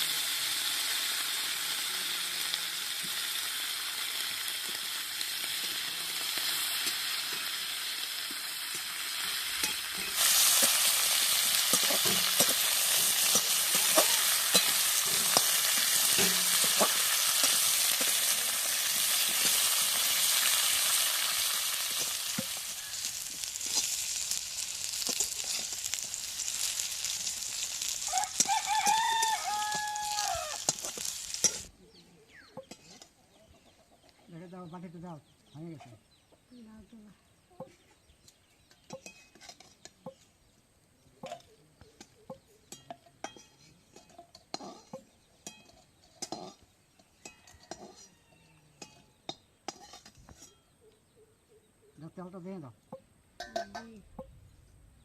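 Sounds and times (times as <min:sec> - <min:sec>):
food sizzling in hot oil: 0:00.0 - 0:31.7, 0:48.8 - 0:50.4
stirring taps and scrapes: 0:09.6 - 0:20.8, 0:21.8 - 0:31.7, 0:32.5 - 0:34.3, 0:37.6 - 0:40.4, 0:41.2 - 0:48.2, 0:48.8 - 0:50.6
chicken calling: 0:26.6 - 0:32.6.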